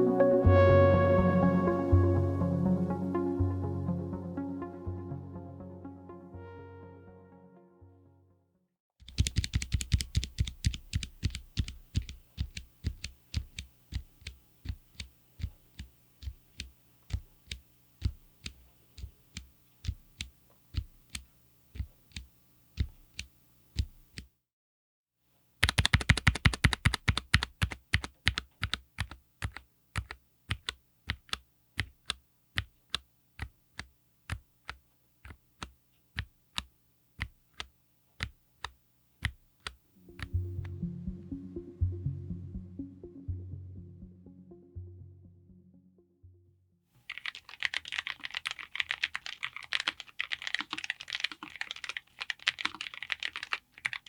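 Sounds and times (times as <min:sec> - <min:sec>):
mechanical keyboard keystrokes: 0:09.0 - 0:24.3, 0:25.6 - 0:40.4, 0:47.1 - 0:54.0.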